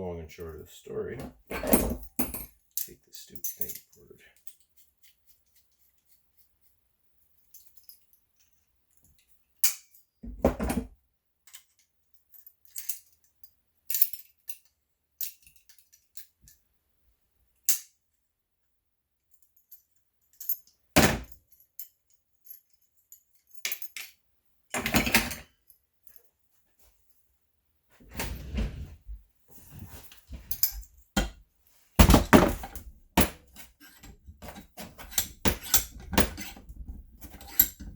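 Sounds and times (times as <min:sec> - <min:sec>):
metal hardware clinking: 0:32.2 - 0:37.9.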